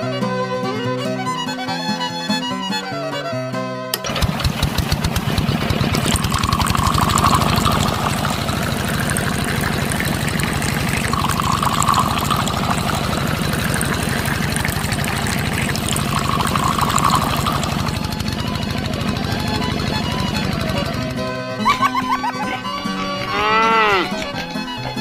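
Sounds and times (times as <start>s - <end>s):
small motor pulsing: 4.0s - 22.8s.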